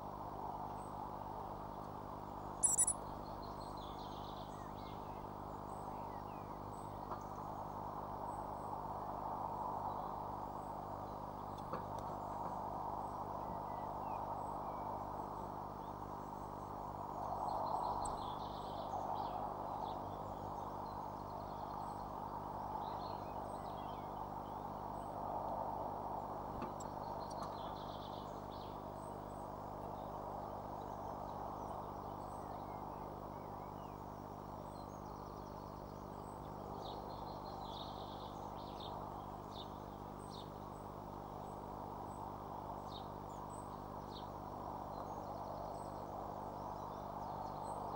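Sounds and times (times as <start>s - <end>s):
birds chirping: 2.6s - 3.0s
low hum: 2.6s - 3.0s.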